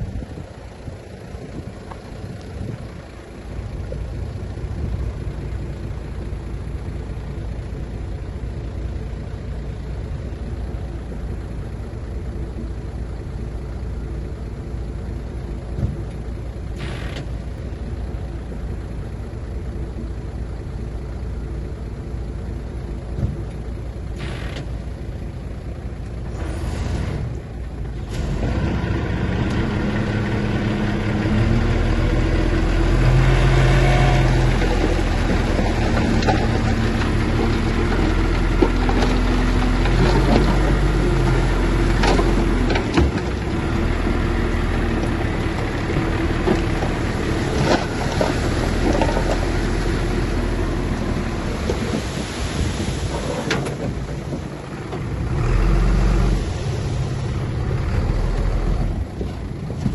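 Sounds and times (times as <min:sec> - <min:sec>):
diesel heavy machinery engines: 0:00.0 - 0:59.9.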